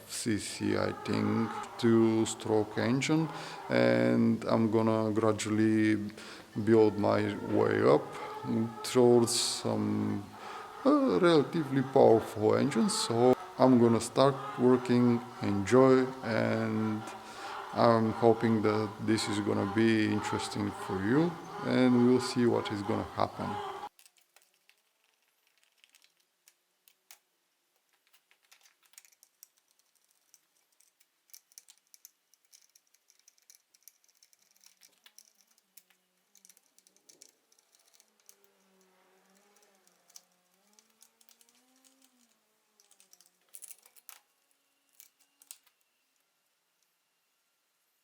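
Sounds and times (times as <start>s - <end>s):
faint wavering hum: 0.0s - 23.9s.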